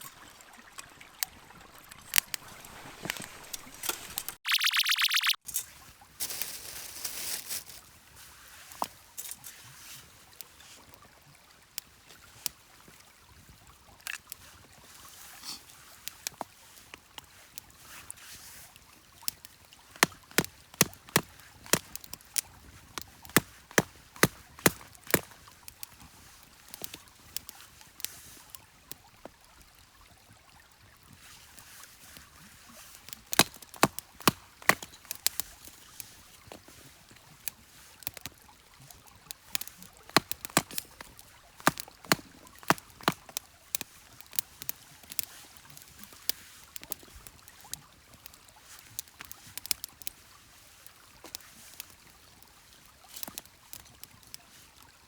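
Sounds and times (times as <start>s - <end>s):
wood fire crackling: 1.9s - 4.4s, 6.2s - 7.8s, 19.2s - 28.5s, 31.3s - 36.8s, 39.3s - 50.2s, 53.1s - 54.3s.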